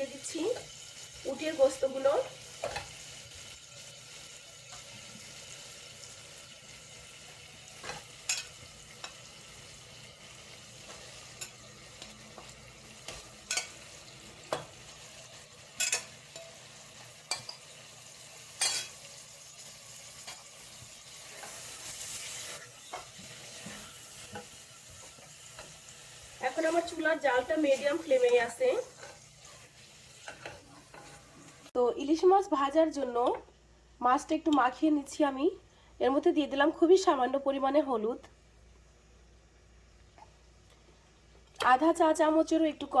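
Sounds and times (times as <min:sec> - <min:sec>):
meat sizzling in hot oil: 0:00.0 - 0:31.7.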